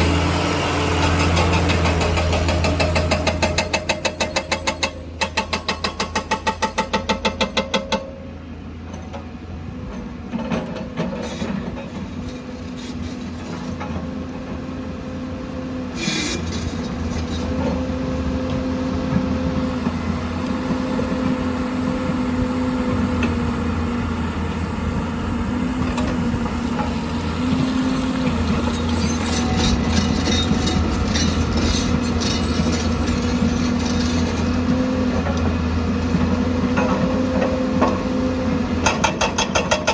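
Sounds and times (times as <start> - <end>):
diesel excavator droning: 0.0 - 5.6, 8.2 - 39.9
metallic clanks and scrapes: 10.4 - 14.1, 16.0 - 17.8, 28.2 - 34.7.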